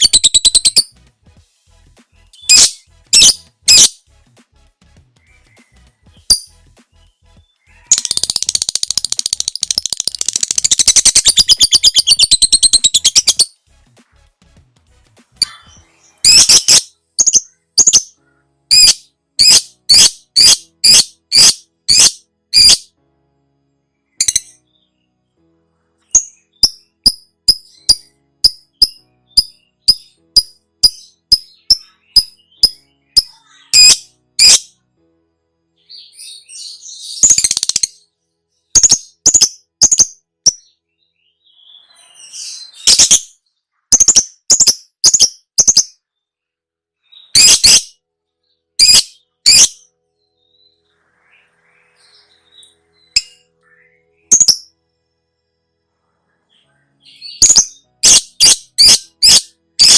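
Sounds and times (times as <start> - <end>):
sharp high-pitched bird calls: 0.0 - 0.9, 2.4 - 4.0, 7.5 - 13.6, 15.4 - 22.9, 26.1 - 34.7, 35.9 - 38.1, 38.8 - 40.7, 41.4 - 46.0, 47.1 - 48.0, 48.8 - 49.9, 52.1 - 54.7, 57.1 - 59.9
lovebird chattering: 7.9 - 13.5, 18.7 - 22.8, 43.9 - 45.9, 48.8 - 49.8, 57.4 - 59.9.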